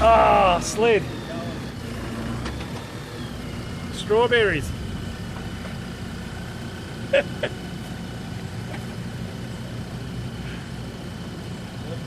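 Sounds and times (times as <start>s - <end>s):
engine idling: 0.0s - 12.0s.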